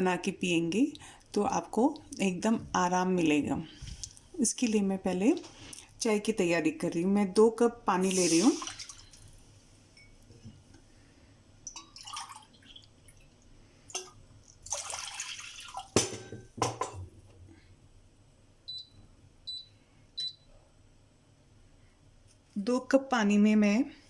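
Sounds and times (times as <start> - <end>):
water pouring into a pot: 8.0 - 9.4, 11.7 - 16.0
ringing water drips: 11.6 - 13.2.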